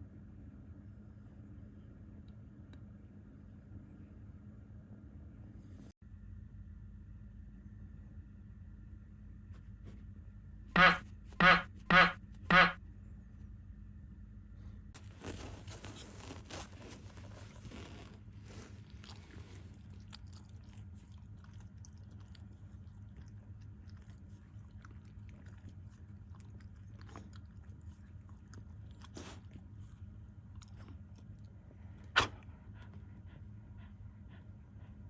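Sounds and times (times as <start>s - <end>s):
chewing and crunching: 15.0s - 32.4s.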